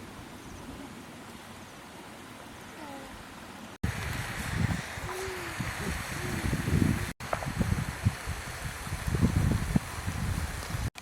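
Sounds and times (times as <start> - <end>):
low wind rumble: 3.2 - 10.9.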